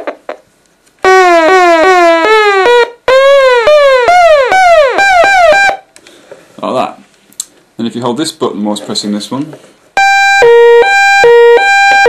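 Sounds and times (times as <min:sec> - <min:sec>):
buzzy electronic beeps dropping in pitch: 0:01.0 - 0:05.8, 0:10.0 - 0:12.0.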